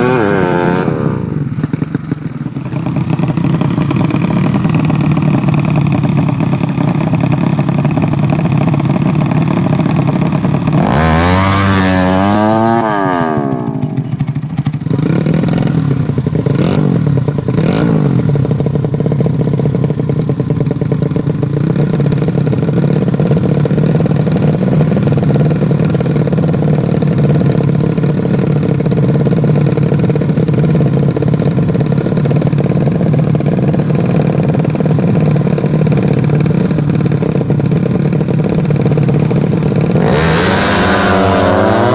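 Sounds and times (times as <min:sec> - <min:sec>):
sharp engine revs: 0:00.0 - 0:01.5, 0:10.8 - 0:14.0, 0:39.9 - 0:41.9
motorcycle engines running: 0:00.0 - 0:41.9
motorcycle revving and accelerating: 0:00.0 - 0:41.9.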